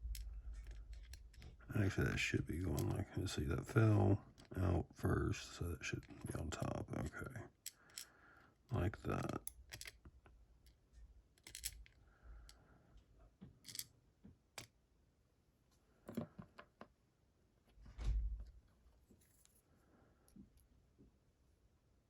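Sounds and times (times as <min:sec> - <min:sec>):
lock parts clicking: 0:00.0 - 0:01.6, 0:09.1 - 0:10.8, 0:11.4 - 0:12.0.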